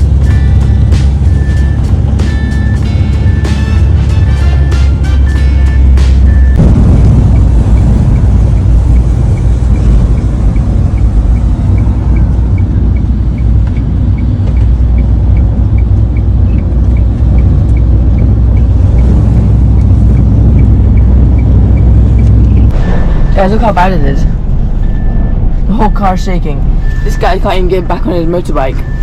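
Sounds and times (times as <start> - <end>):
wind buffeting a car: 5.8 - 29.0
faint regular ticking: 6.4 - 22.7.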